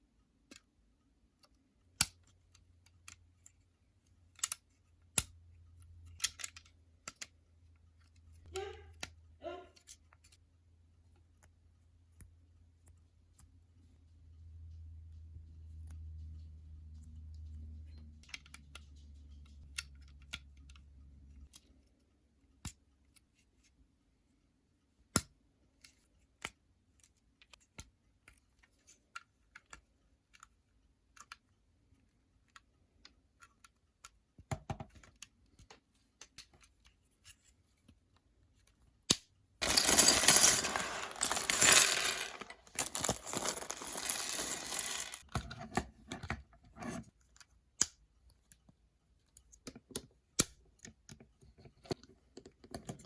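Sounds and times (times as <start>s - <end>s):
plastic pieces clicking together: 39.6s - 45.2s
clatter of plastic pieces: 39.6s - 45.3s.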